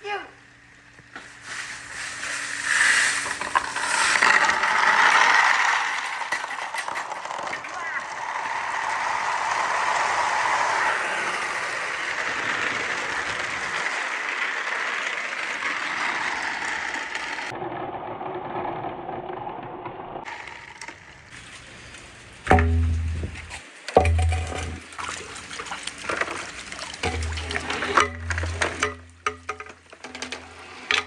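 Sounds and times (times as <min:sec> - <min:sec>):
marbles rolling on wooden track: 0:02.0 - 0:21.3
loud low tone: 0:22.5 - 0:24.8.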